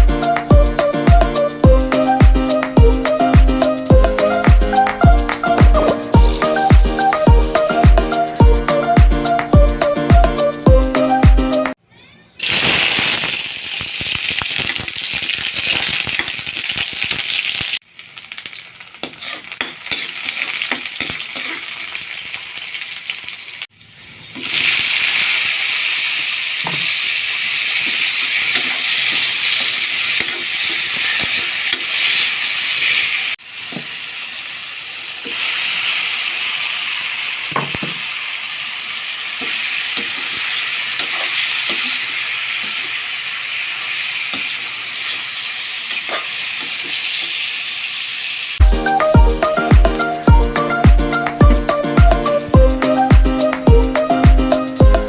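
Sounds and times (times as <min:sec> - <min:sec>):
food sizzling in a pan: 0:12.4 - 0:48.6.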